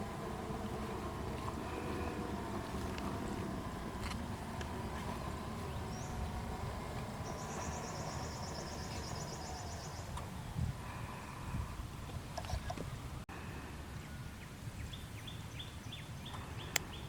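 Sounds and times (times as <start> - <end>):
steady low rumble: 0.0 - 12.3.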